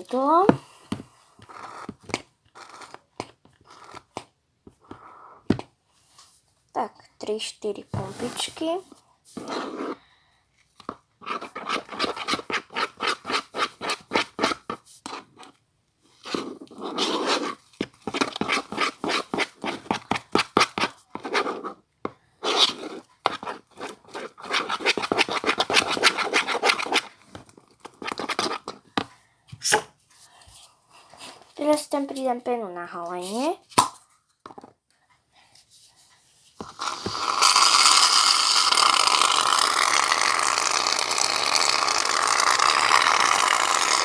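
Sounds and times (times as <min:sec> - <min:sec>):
utensil scraping a bowl: 0:09.3 - 0:10.0, 0:11.2 - 0:15.4, 0:16.2 - 0:21.8, 0:22.4 - 0:27.2, 0:36.6 - 0:44.0.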